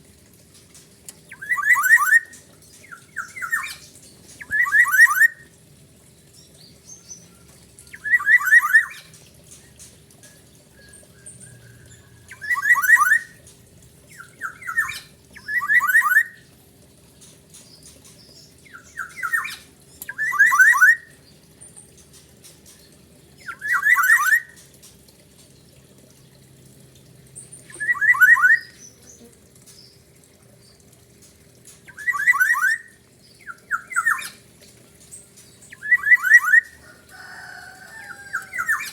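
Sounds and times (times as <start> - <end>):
bird singing whistled notes: 1.3 - 3.8, 4.4 - 5.4, 7.9 - 9.1, 10.7 - 13.4, 14.1 - 16.4, 18.7 - 21.1, 23.4 - 24.5, 27.6 - 29.1, 31.9 - 34.4, 35.7 - 36.7.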